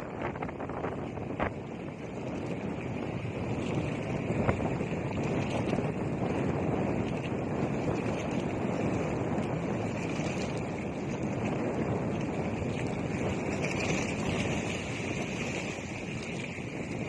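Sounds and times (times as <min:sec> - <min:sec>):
sea waves washing ashore: 0:00.0 - 0:17.0
wind buffeting microphone: 0:00.0 - 0:17.0.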